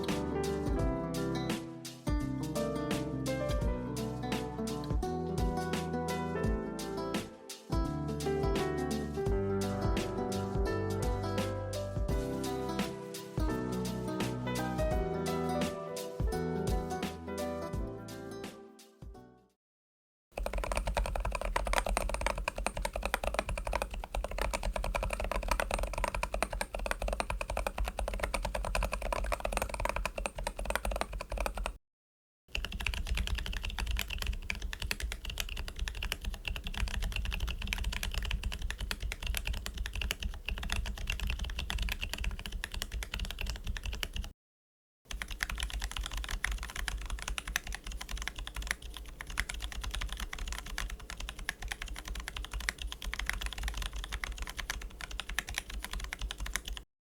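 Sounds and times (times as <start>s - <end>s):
keyboard typing: 20.4s - 31.8s, 32.5s - 44.3s, 45.1s - 56.8s.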